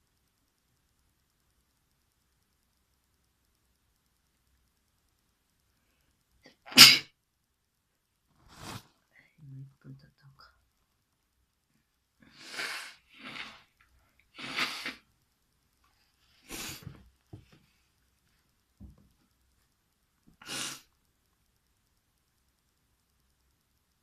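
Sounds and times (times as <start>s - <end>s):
person sneezing: 20.4s - 20.9s.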